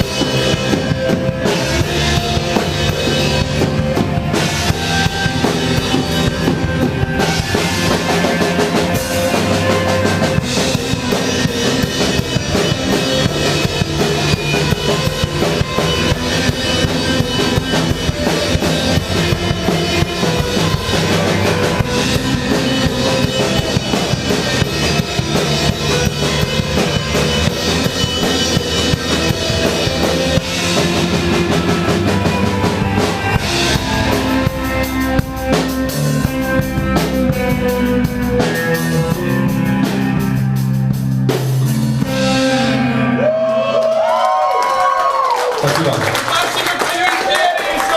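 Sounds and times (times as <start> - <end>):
punk rock band playing live: 0.0 - 47.9.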